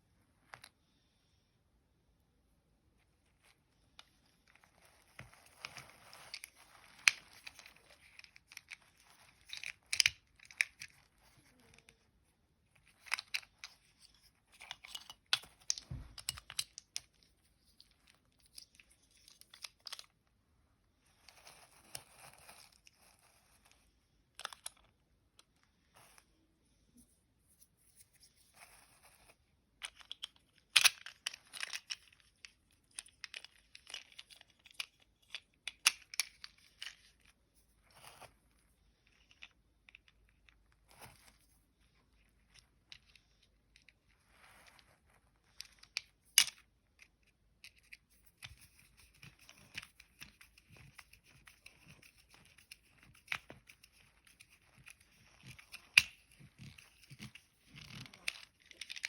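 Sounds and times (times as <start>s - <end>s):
small objects clicking: 4.0s - 12.0s, 45.5s - 59.0s.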